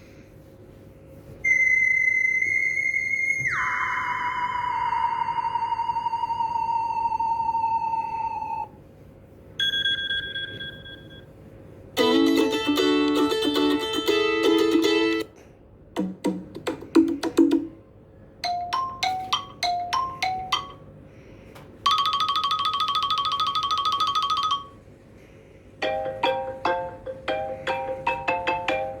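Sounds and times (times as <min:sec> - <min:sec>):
electronic ringtone melodies: 0:12.0 - 0:15.3, 0:18.4 - 0:20.9, 0:21.9 - 0:24.8, 0:25.8 - 0:29.0.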